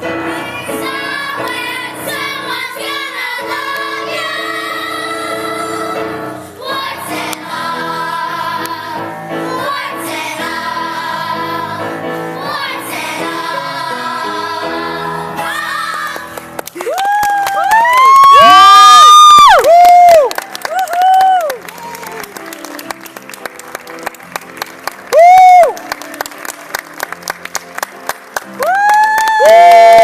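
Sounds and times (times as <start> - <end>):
cast singing together: 0.4 - 16.1.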